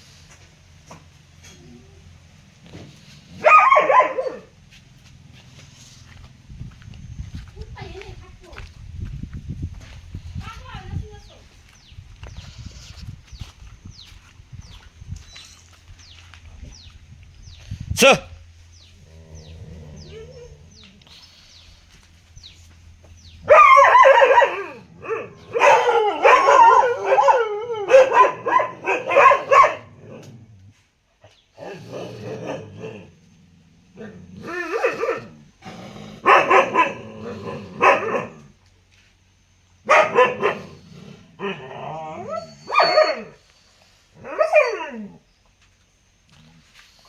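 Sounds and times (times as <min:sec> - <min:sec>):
dog barking: 0:03.4 - 0:04.5, 0:23.5 - 0:30.0, 0:34.6 - 0:35.2, 0:36.2 - 0:38.5, 0:39.8 - 0:40.8, 0:42.3 - 0:43.4.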